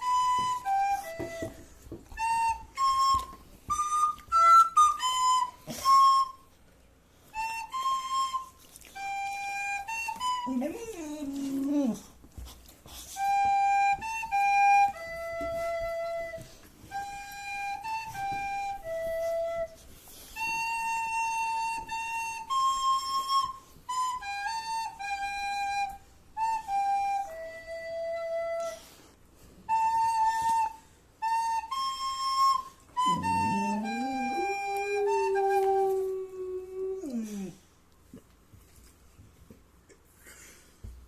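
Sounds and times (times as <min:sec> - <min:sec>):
flute playing slow melody: 0:00.0 - 0:11.9, 0:13.1 - 0:37.6
dog howling: 0:33.0 - 0:37.6.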